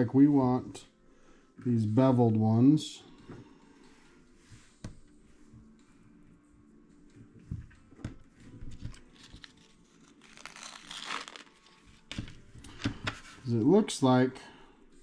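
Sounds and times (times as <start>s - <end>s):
plastic bag crinkling: 9.1s - 12.1s.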